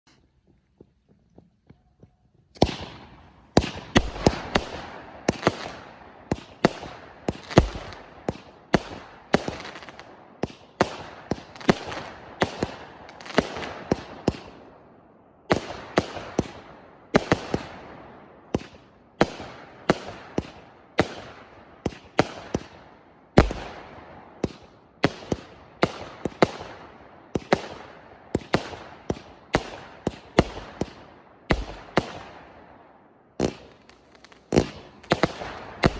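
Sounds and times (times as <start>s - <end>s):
firework shots with hiss: 2.6s - 14.6s, 33.4s - 35.9s.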